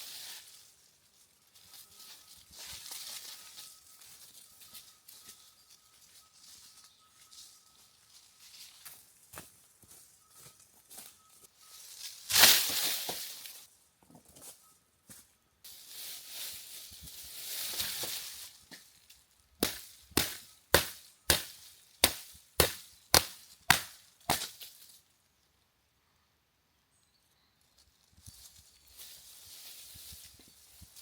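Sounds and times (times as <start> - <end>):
rustling and crunching: 0.0 - 25.1, 27.5 - 31.0
sharp knocks: 19.6 - 24.5.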